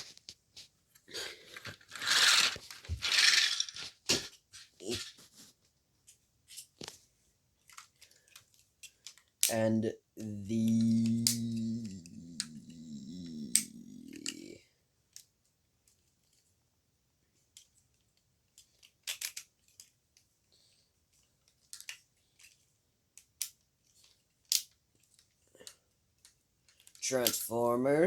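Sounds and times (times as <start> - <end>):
plastic toy figures clicking: 10.2 - 14.5.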